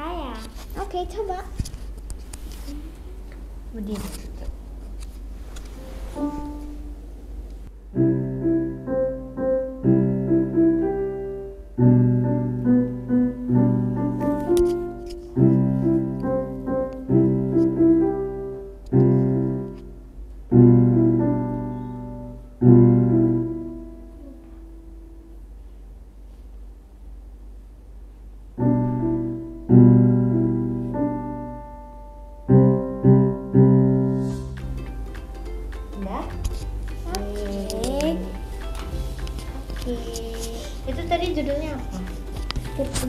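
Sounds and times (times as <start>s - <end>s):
electronic keyboard piano tune: 7.9s - 19.9s, 20.5s - 24.4s, 28.6s - 43.0s.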